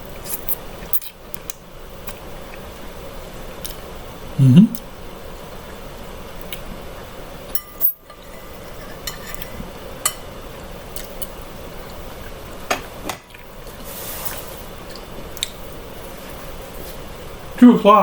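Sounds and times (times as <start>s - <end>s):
fork clinking against plate: 7.6s - 10.3s
soft hiss: 13.4s - 18.0s.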